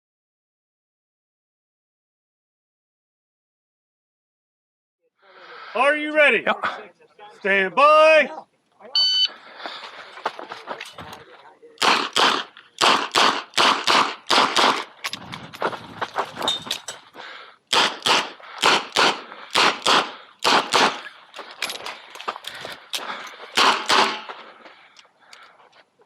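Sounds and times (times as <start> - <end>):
revolver gunshots: 11.8 - 14.9, 17.7 - 21.1, 23.6 - 24.4.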